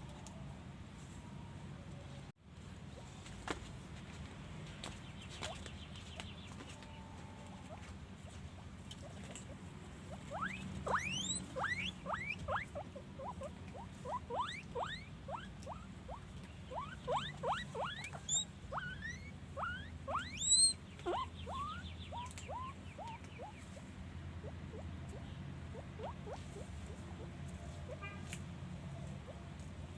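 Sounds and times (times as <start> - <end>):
guinea pigs wheeking: 7.4 - 28.0.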